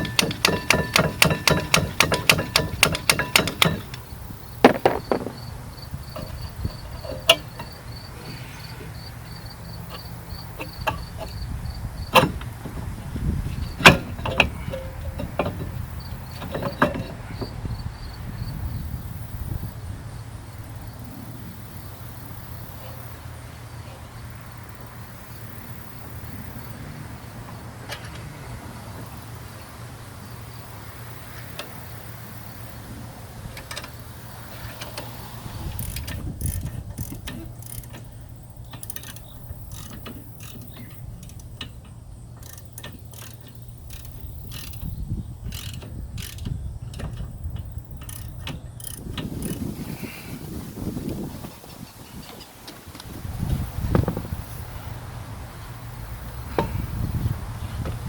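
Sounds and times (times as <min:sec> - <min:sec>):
hand tool clicking: 0:00.0 - 0:05.5, 0:06.1 - 0:07.8, 0:35.7 - 0:41.8, 0:42.4 - 0:49.8
metal tool knocks and clinks: 0:00.0 - 0:05.5, 0:06.1 - 0:07.8
cricket chirping: 0:00.0 - 0:12.6, 0:13.2 - 0:27.6.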